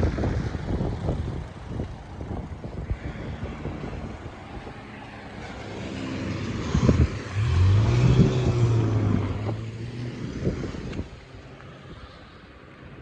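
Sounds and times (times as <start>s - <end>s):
low engine hum: 0.0s - 13.0s
tyres hissing on wet road: 2.9s - 13.0s.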